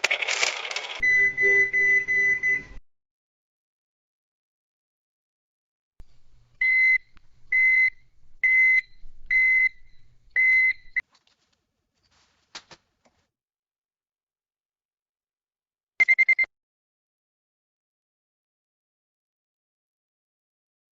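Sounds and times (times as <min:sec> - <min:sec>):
high-pitched electronic beeps: 0:01.0 - 0:02.7.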